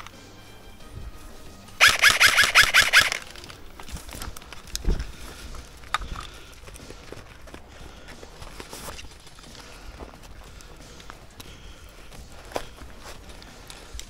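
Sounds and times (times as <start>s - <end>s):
airsoft rifle firing: 1.8s - 3.5s.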